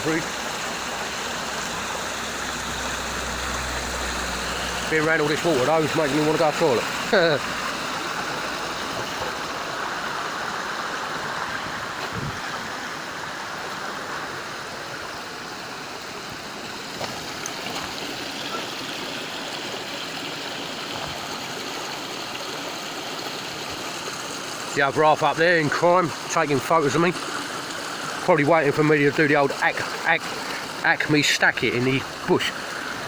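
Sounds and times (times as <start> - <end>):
stream water rushing over rocks: 0.0 - 33.0.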